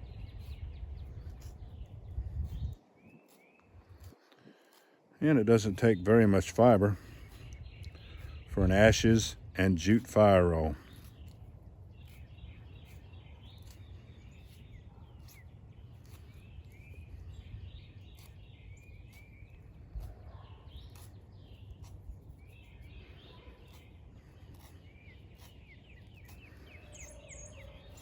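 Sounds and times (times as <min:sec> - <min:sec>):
faint birds chirping: 0:00.0 - 0:28.0.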